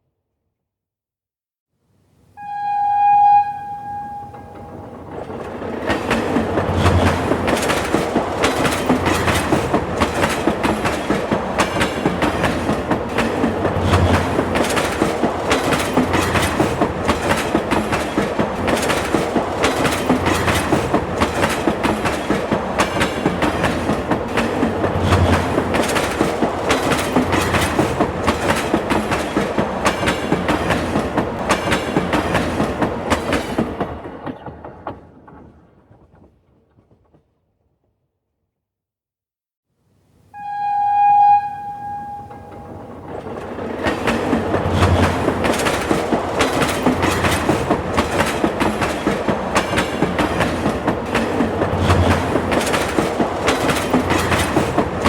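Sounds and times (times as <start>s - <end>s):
train rumble: 2.4s - 37.2s, 40.4s - 55.0s
train wheels clacking over joints: 4.4s - 37.2s, 42.4s - 55.0s.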